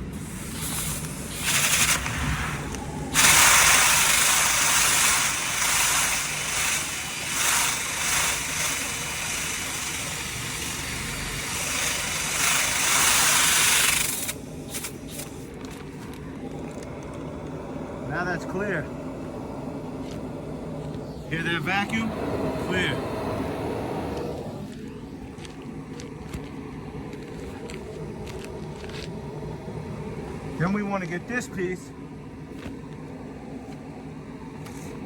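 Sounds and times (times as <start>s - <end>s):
vacuum hum: 0.0s - 35.0s.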